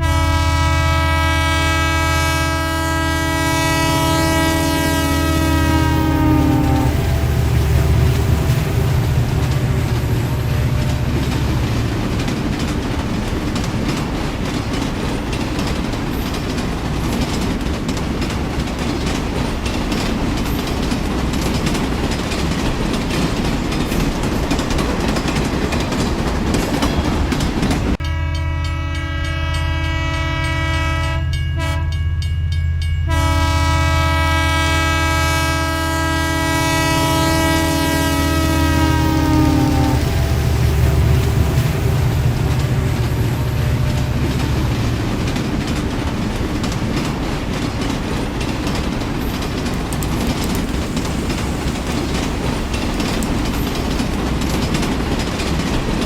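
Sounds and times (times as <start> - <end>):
horn-like held chord: 0.0 - 7.5, 28.0 - 32.2, 33.0 - 40.2
train rail clatter: 1.7 - 31.8, 32.8 - 56.0.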